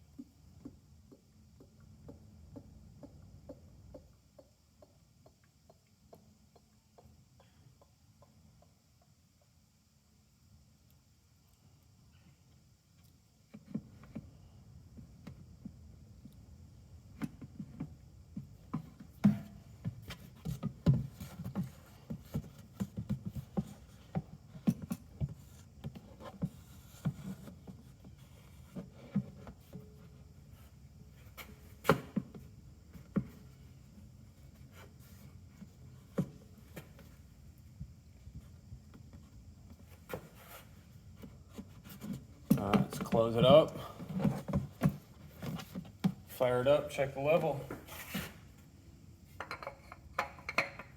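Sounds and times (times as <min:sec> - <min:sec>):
knocks and clunks of handling: 0:17.1 - 0:33.8, 0:41.2 - 0:46.4, 0:49.4 - 0:50.9.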